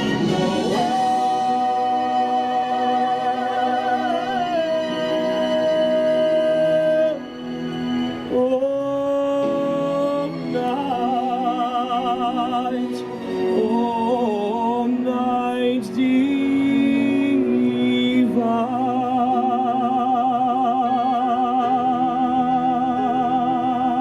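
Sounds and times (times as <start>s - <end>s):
group singing carol in harmony: 0.0s - 6.9s.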